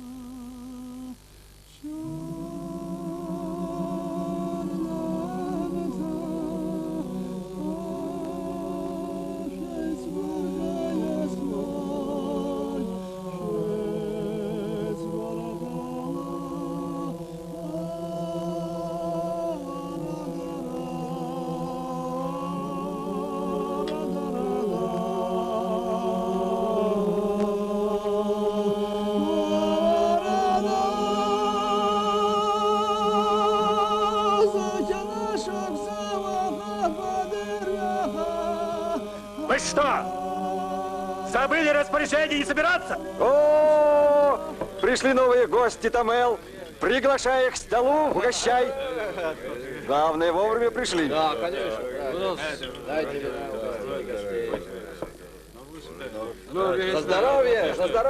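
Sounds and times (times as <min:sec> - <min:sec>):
held low vocal drone: 0:00.0 - 0:44.8
unaccompanied group singing: 0:01.8 - 0:47.0, 0:47.8 - 0:58.0.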